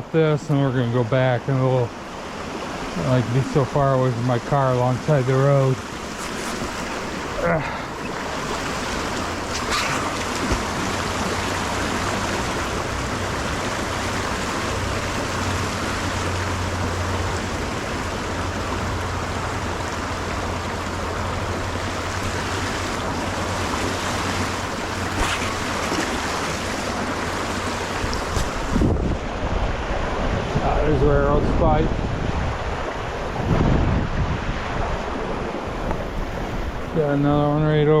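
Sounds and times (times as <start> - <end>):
creek water rushing: 0.0 - 38.0
wind on microphone: 20.2 - 37.1.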